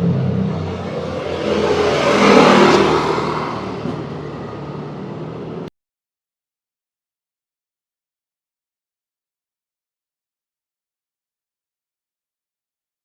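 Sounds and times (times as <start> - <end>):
vehicle passing: 0.0 - 5.7.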